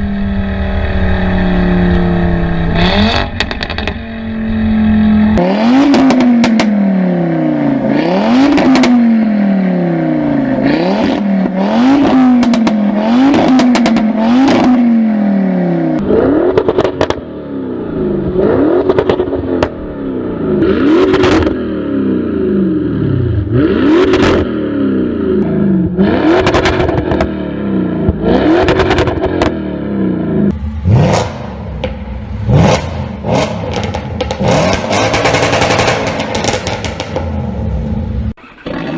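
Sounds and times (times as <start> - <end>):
car engine revving: 0.0 - 38.9
exhaust crackling and popping: 3.1 - 4.0, 16.0 - 17.2, 18.8 - 19.9, 30.5 - 38.9.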